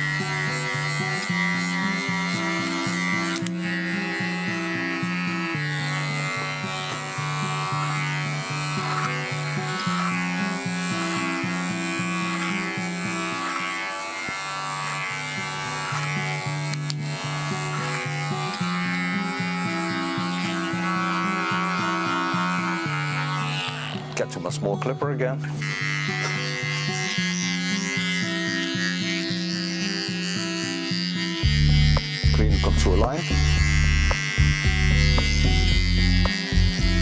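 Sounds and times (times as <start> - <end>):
electric hair clipper buzzing: 0.0 - 37.0.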